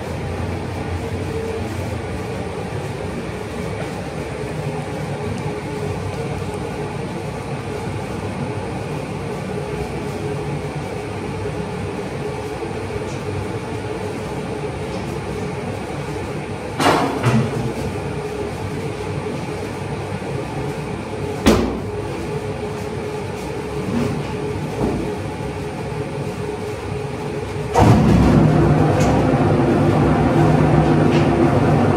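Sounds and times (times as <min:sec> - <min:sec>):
constant hum: 0:00.0 - 0:31.9
carpet-beating machine running: 0:17.8 - 0:31.9.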